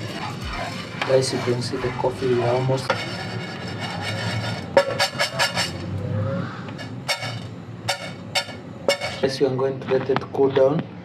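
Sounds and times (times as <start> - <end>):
coffee beans clinking and scraping: 0.0 - 5.8
low hum: 5.6 - 9.0.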